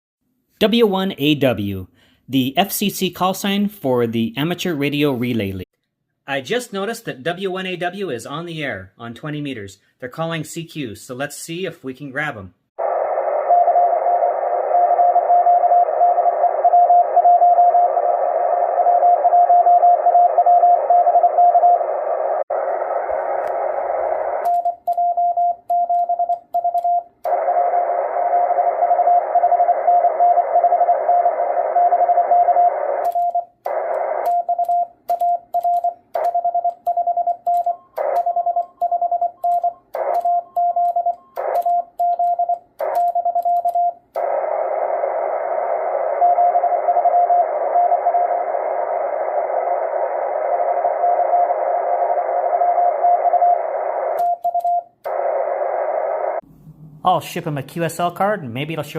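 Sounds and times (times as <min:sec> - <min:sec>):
morse code beeping: 0:24.5 - 0:27.2, 0:34.2 - 0:44.1
clicks: 0:33.0 - 0:44.4, 0:54.1 - 0:55.3.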